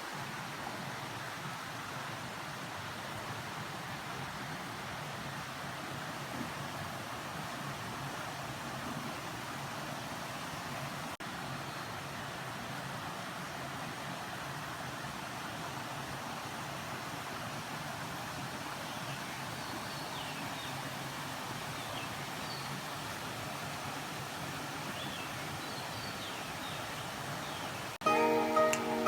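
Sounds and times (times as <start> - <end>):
outdoor background noise: 0.0 - 29.0
music: 28.0 - 29.0.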